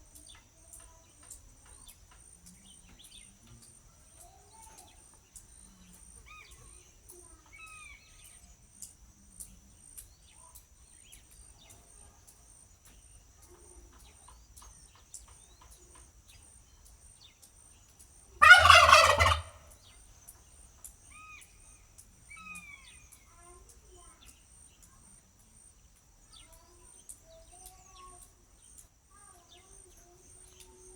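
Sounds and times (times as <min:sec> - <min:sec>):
faint bird chirps: 0:00.0 - 0:30.9
turkey gobbling: 0:18.4 - 0:19.7.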